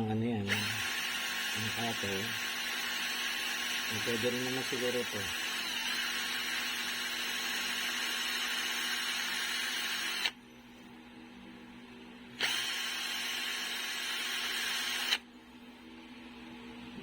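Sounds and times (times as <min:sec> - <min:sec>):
electric drill whining: 0:00.5 - 0:10.4, 0:12.4 - 0:15.2.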